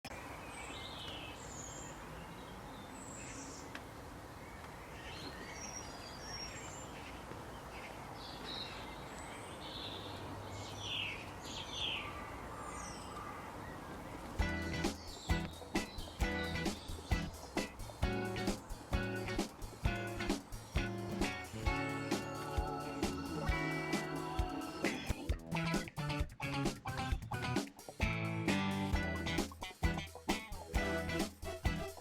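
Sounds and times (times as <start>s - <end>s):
birds chirping: 0.0s - 32.0s
steady background hiss: 0.1s - 25.3s.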